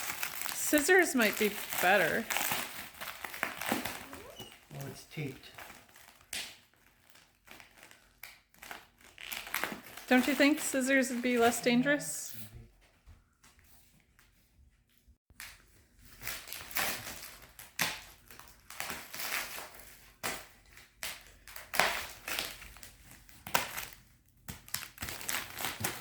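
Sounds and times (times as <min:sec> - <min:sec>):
plastic wrapping crinkling: 0:00.0 - 0:11.4.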